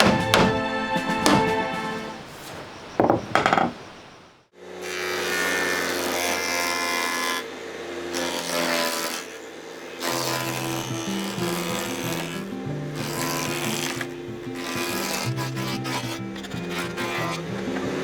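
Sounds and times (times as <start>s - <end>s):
plucked notes: 0.0s - 2.2s
power tool cutting wood: 4.6s - 18.0s.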